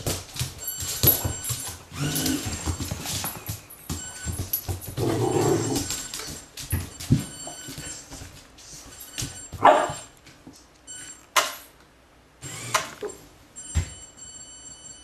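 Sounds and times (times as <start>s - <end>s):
puppy barking: 9.6s - 10.1s.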